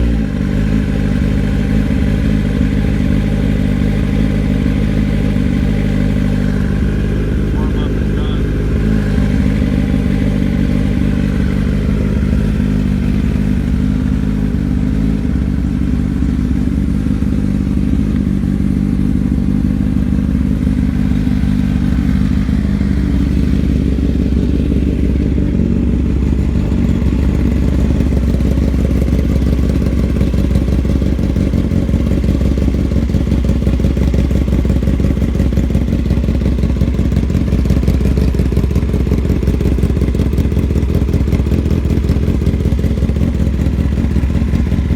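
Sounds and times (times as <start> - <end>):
motorcycle engine idling: 0.0 - 44.9.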